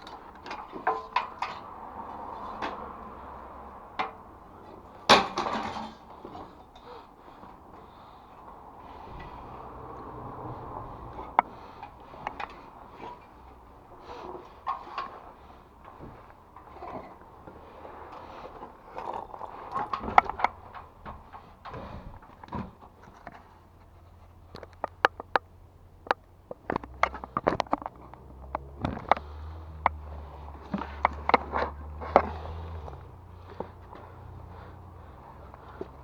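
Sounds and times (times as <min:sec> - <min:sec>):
sharp clicks and knocks: 0:24.4 - 0:33.9.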